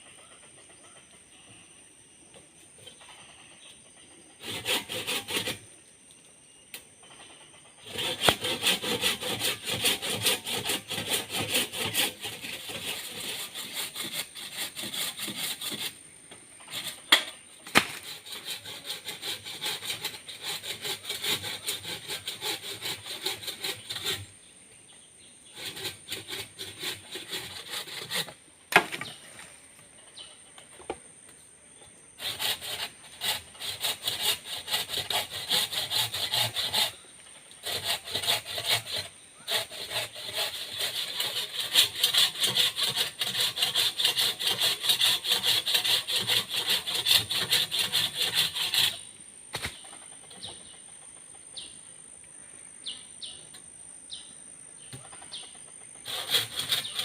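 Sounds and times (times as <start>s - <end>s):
hand saw cutting wood: 4.4s - 5.7s, 7.8s - 16.0s, 16.6s - 24.4s, 25.5s - 29.5s, 32.2s - 49.7s, 56.0s - 57.0s.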